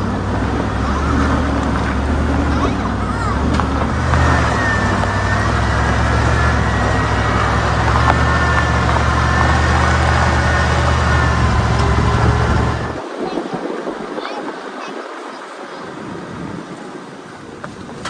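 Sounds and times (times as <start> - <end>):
vehicle engine hum: 0.0 - 13.0
road noise: 0.0 - 14.1.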